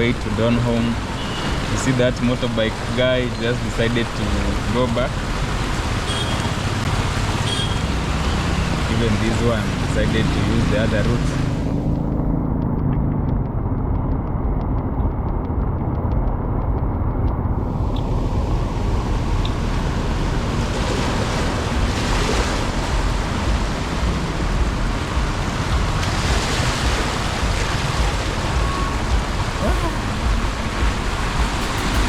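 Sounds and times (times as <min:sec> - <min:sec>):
floodwater rushing: 0:00.0 - 0:13.2, 0:17.1 - 0:32.0
wind buffeting microphone: 0:11.4 - 0:32.0
low rumble: 0:11.6 - 0:32.0.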